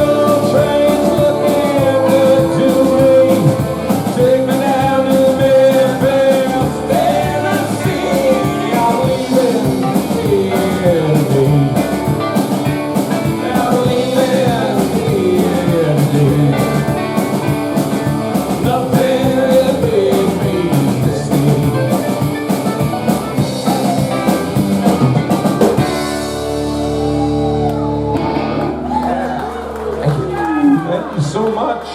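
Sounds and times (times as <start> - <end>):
person singing: 0.0 - 12.4, 13.0 - 17.2, 18.4 - 24.4
drum kit cymbals: 0.0 - 27.3
electric guitar: 0.0 - 31.0.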